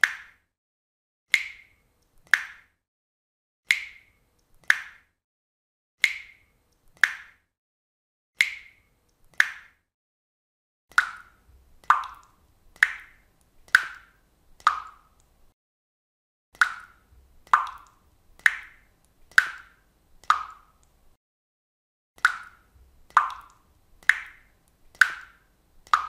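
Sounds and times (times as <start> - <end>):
water drops plopping into water: 0.0 - 0.5, 1.3 - 2.8, 3.7 - 5.1, 6.0 - 7.4, 8.4 - 9.8, 10.9 - 15.4, 16.6 - 21.0, 22.2 - 26.0.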